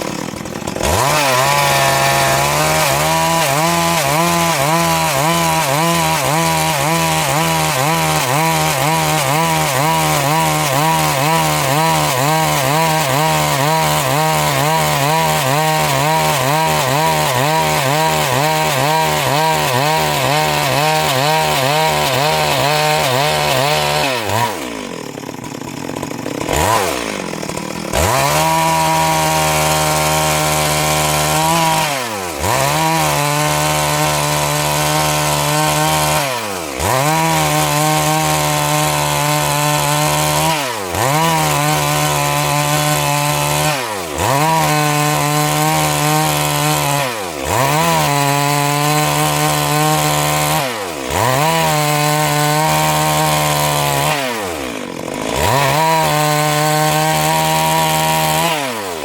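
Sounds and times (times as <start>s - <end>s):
chainsaw cutting logs: 0.0s - 59.0s.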